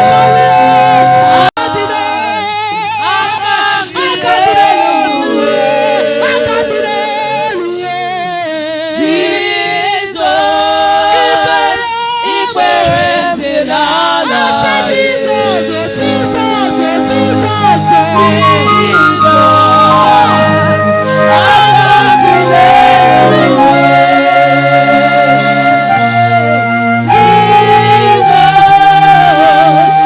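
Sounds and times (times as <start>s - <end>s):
group singing gospel song: 0.0s - 30.0s.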